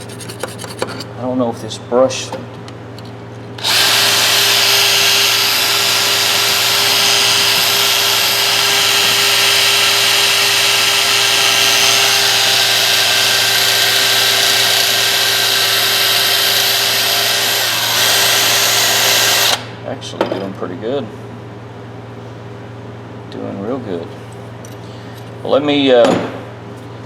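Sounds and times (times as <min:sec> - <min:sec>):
power tool wire brush scrubbing: 0:00.0 - 0:01.0.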